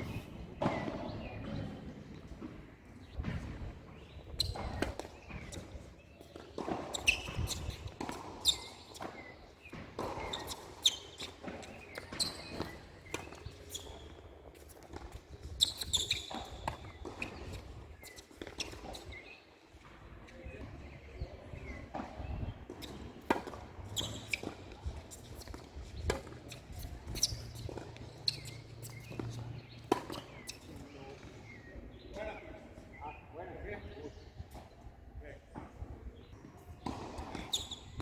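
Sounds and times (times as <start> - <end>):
tennis ball struck by racket: 0.0 - 2.5
tennis ball bouncing on court: 0.0 - 19.2, 20.6 - 31.6, 36.4 - 38.0.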